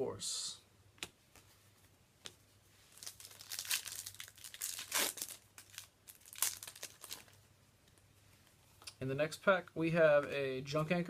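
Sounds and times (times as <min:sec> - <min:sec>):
foil wrapper crinkling and tearing: 0:02.9 - 0:07.4.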